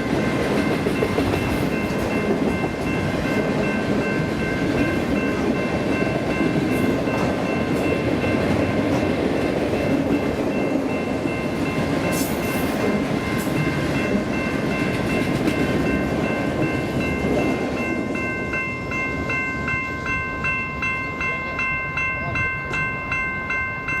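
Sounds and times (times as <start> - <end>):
freight train wheels rumbling: 0.0 - 24.0
steady high ringing tone: 0.0 - 24.0.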